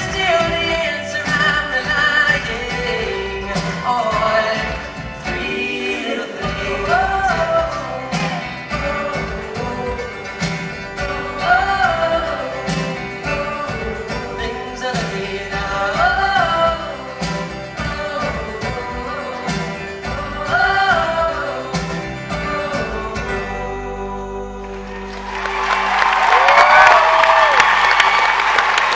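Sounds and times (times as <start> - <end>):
live band with singers: 0.0 - 28.9
audience applause and cheering: 24.6 - 28.9
person whooping: 25.2 - 28.6.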